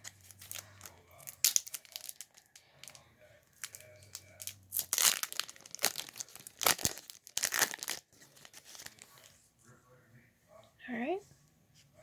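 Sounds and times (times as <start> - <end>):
foil pack tearing: 0.0 - 3.0, 3.6 - 9.2
wrapper crinkling: 0.0 - 9.3.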